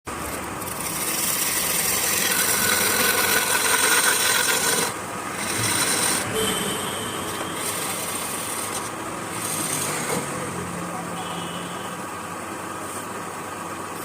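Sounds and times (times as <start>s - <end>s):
faint machine whine: 0.1s - 14.0s
tool scraping wood on lathe: 0.2s - 10.6s.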